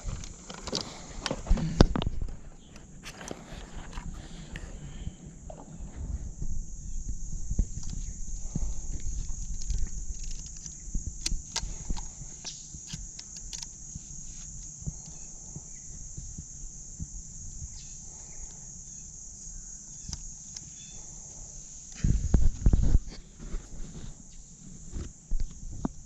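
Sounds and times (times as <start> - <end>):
insects droning: 0.0 - 26.0
low thumps: 5.4 - 10.2.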